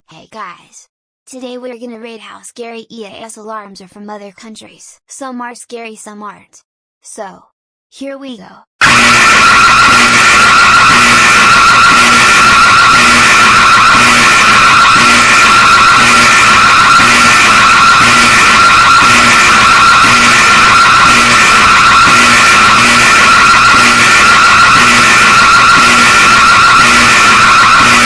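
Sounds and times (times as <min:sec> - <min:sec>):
distorted alarm screech: 0:08.8 - 0:28.0.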